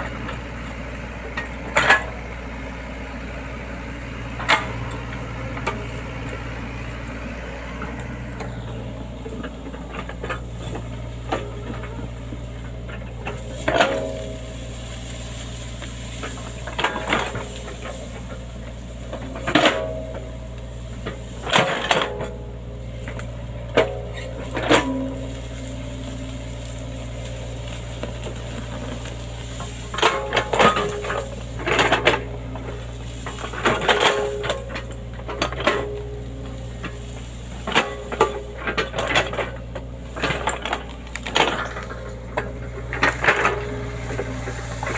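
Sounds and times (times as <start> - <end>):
excavator diesel engine running: 0.0 - 44.9
sharp metallic clanks: 12.9 - 20.3.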